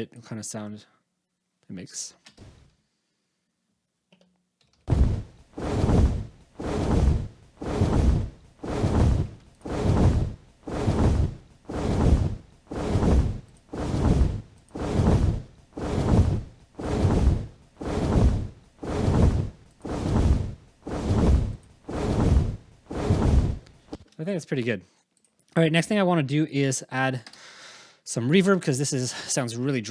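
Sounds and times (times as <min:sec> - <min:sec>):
heavy wing flap whoosh: 0:04.9 - 0:24.0.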